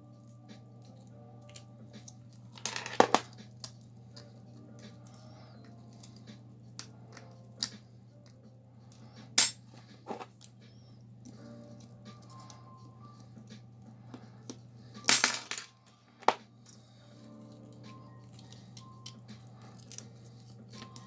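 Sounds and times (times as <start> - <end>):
steady low hum: 0.0 - 21.0
metal tools clicking and clinking: 9.4 - 10.5, 15.1 - 16.8.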